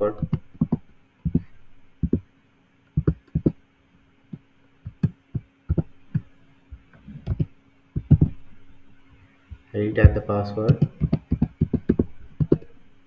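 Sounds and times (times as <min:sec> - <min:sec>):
faint steady hum: 0:00.0 - 0:13.0
keyboard typing: 0:00.2 - 0:02.2, 0:03.0 - 0:03.6, 0:04.9 - 0:06.3, 0:07.2 - 0:08.4, 0:10.0 - 0:12.7.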